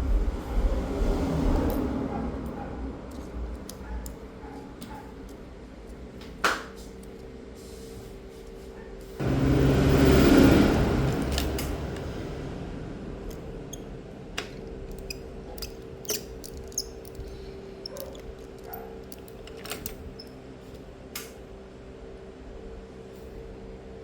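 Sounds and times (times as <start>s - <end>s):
loud rushing noise: 9.2s - 14.2s
steady hum: 9.2s - 20.6s.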